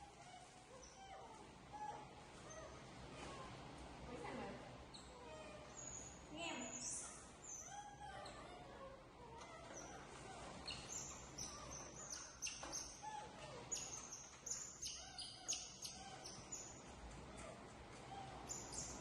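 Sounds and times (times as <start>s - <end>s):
faint background noise: 0.0s - 19.0s
birds chirping: 4.8s - 19.0s.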